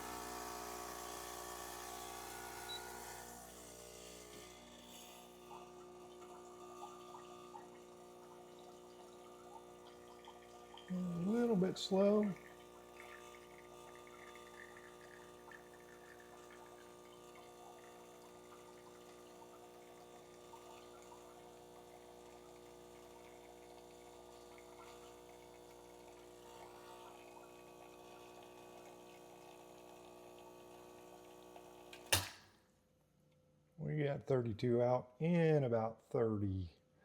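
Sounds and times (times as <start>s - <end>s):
espresso machine pump humming: 0.0s - 32.4s
espresso machine click: 32.0s - 32.4s.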